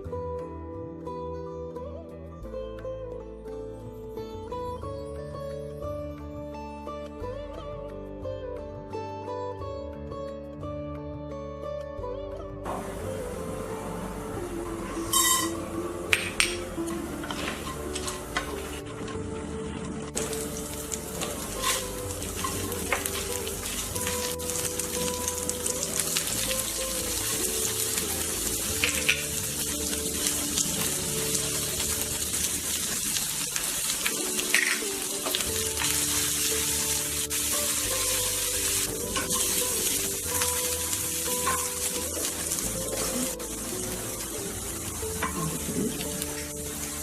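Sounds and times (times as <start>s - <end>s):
background music: 0.0s - 47.0s
sizzling on a hot griddle: 12.7s - 47.0s.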